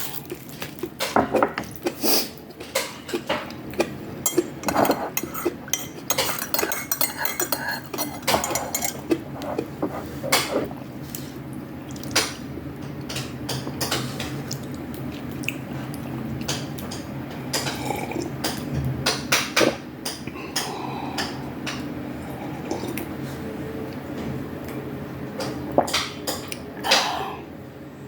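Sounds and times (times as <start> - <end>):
wet chewing and mouth sounds: 0.0 - 12.4, 13.0 - 17.0
utensils clicking on dishes: 2.6 - 10.7.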